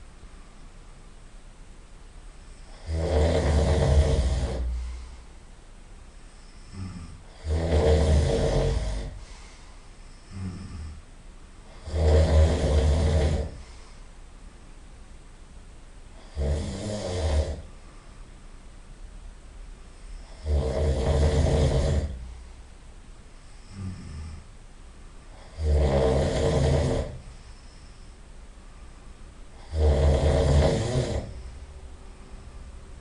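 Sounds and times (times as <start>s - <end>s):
soft breathing: 2.4s - 5.6s, 6.2s - 14.4s, 17.5s - 18.5s, 21.2s - 24.6s, 26.4s - 29.7s
person snoring loudly: 2.6s - 5.0s, 6.4s - 9.3s, 10.2s - 11.0s, 11.7s - 13.7s, 16.2s - 17.7s, 20.1s - 22.3s, 23.6s - 24.5s, 25.3s - 27.6s, 29.5s - 31.6s.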